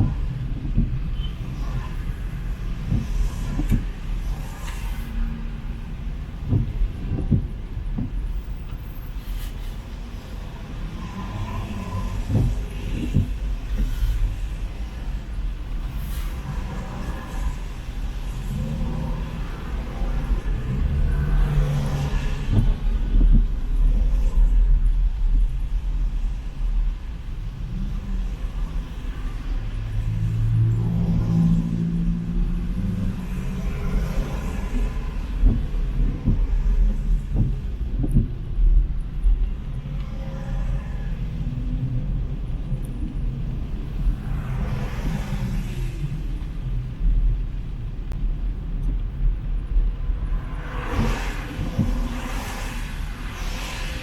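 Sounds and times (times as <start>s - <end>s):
dull low thumps: 0.0s - 4.5s, 5.2s - 8.8s, 11.7s - 16.7s, 17.6s - 29.0s, 29.6s - 40.1s
cars passing: 0.0s - 54.0s
low rumble of traffic: 0.0s - 54.0s.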